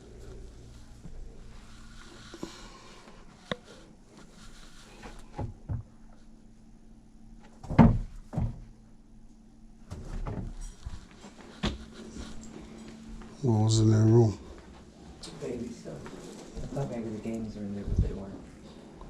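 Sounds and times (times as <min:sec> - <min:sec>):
low steady hum: 0:00.0 - 0:19.0
knocks and thuds: 0:07.6 - 0:08.7.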